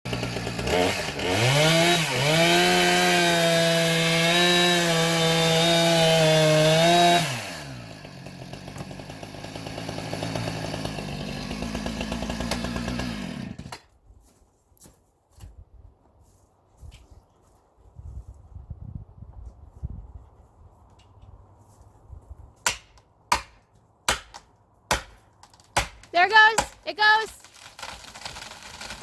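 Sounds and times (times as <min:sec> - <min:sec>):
chainsaw revving and idling: 0:00.1 - 0:13.9, 0:26.0 - 0:29.0.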